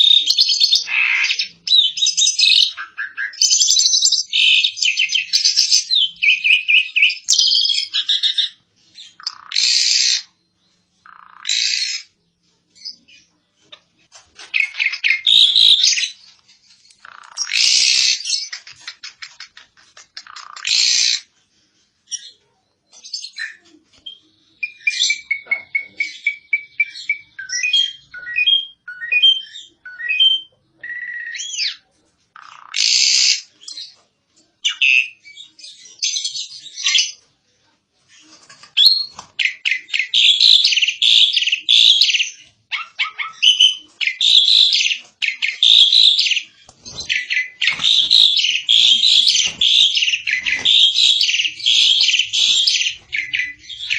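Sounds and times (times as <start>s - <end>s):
starling singing: 0.0s - 10.4s, 11.0s - 12.2s, 14.4s - 21.3s, 23.0s - 31.8s, 38.6s - 53.9s.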